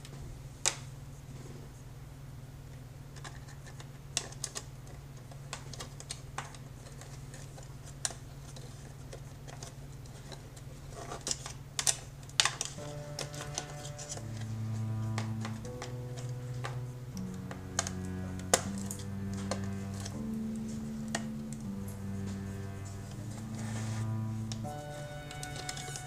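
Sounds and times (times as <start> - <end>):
background music: 12.7 - 26.0
low hum: 12.8 - 26.0.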